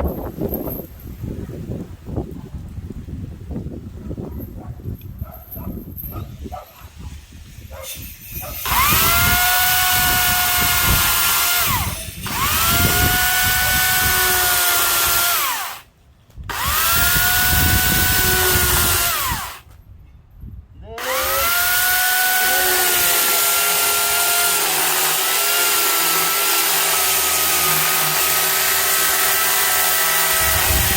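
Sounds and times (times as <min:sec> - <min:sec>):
electric chainsaw motor whining: 0:08.6 - 0:15.9, 0:16.5 - 0:19.7, 0:21.0 - 0:30.9.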